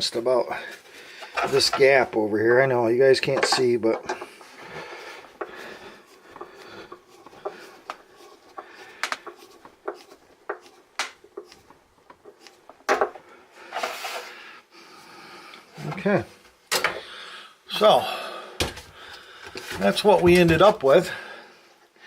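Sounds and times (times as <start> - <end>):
short rubbing scrape: 4.8 - 12.9, 13.6 - 14.4
small tools clicking and tapping: 5.2 - 13.2.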